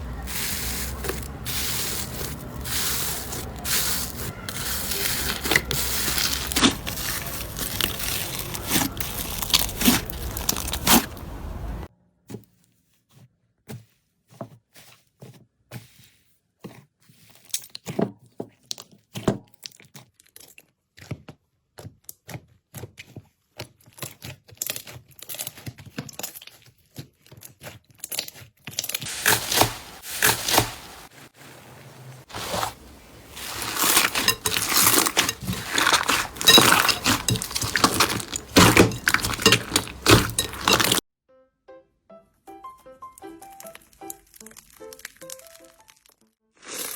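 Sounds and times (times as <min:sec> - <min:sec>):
slime crackling when squeezed: 0:03.9 - 0:11.2, 0:43.2 - 0:46.9.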